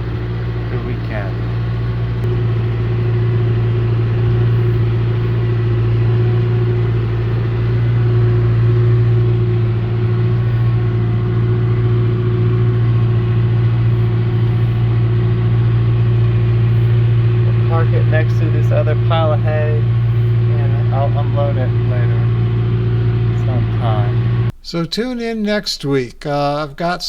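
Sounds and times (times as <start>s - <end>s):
tractor diesel engine droning: 0.0s - 25.2s.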